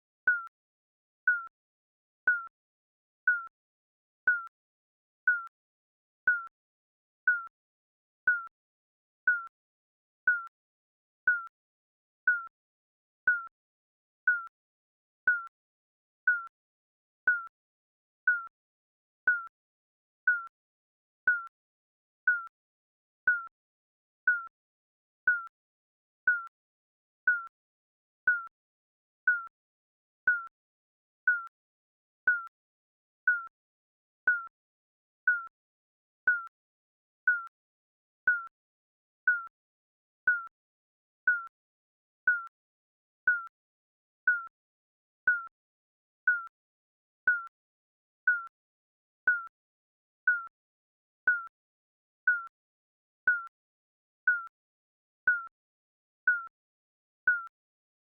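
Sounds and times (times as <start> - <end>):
timer beeping: 0.3 - 0.5, 2.3 - 2.5, 4.3 - 4.5, 5.3 - 5.5, 7.3 - 7.5, 9.3 - 9.5, 10.3 - 10.5, 11.3 - 11.5, 12.3 - 12.5, 14.3 - 14.5, 17.3 - 17.5, 18.3 - 18.5, 19.3 - 19.5, 22.3 - 22.5, 24.3 - 24.5, 26.3 - 26.5, 27.3 - 27.5, 28.3 - 28.5, 29.3 - 29.5, 36.3 - 36.5, 39.3 - 39.5, 41.3 - 41.5, 42.3 - 42.5, 44.3 - 44.5, 45.3 - 45.5, 46.3 - 46.5, 49.3 - 49.5, 51.3 - 51.5.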